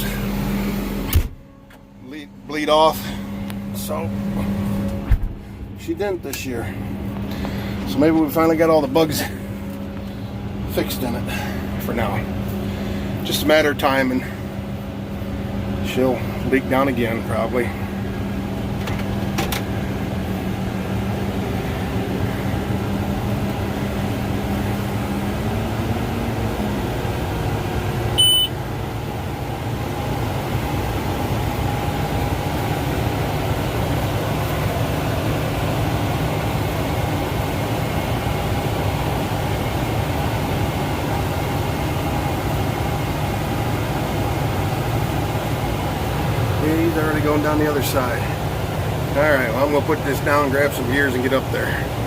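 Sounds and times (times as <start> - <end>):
air-conditioning fan: 0.0 - 52.0
tractor engine running: 0.0 - 52.0.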